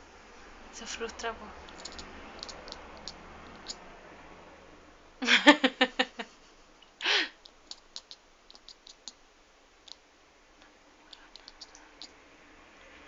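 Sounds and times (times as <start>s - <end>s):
kitten chattering clicks: 1.1s - 3.8s, 7.4s - 9.2s, 9.8s - 10.0s, 11.1s - 12.2s
kitten chirp: 1.7s - 3.8s, 7.4s - 9.2s, 11.1s - 12.2s.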